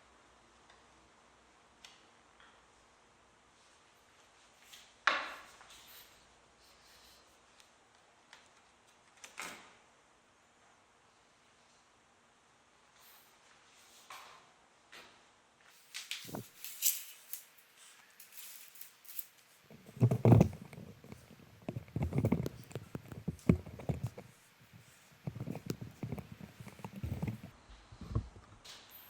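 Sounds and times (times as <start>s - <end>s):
knocks and rubbing: 19.7s - 28.4s.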